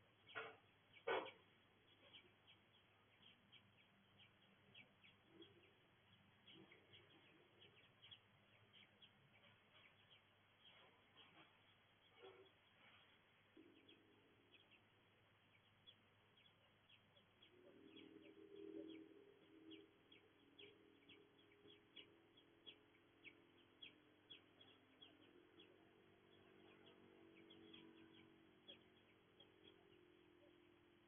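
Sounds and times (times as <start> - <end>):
faint bird chirps: 0.0 - 31.0
low steady drone: 11.7 - 31.0.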